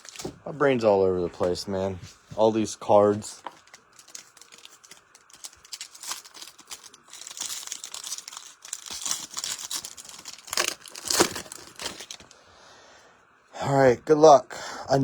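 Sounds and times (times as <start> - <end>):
plastic wrapper ripping: 0.0 - 0.4, 3.4 - 12.3
plastic wrapper crinkling: 0.0 - 0.5, 3.4 - 12.4.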